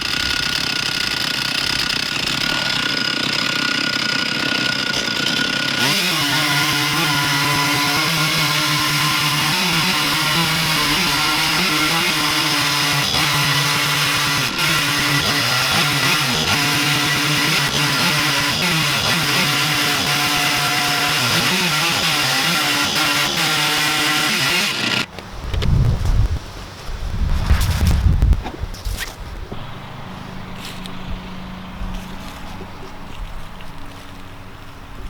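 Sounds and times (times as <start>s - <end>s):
chainsaw cutting log at high revs: 0.0s - 25.1s.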